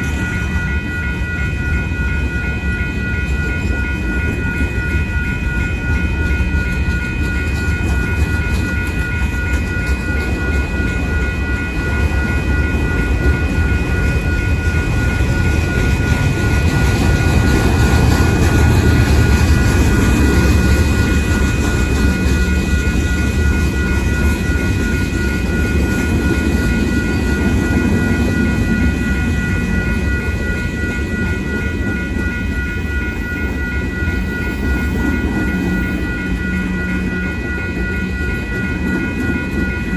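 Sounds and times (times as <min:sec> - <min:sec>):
crossing warning bell ringing: 0:00.0 - 0:39.9
train wheels rumbling on rail: 0:00.0 - 0:39.9.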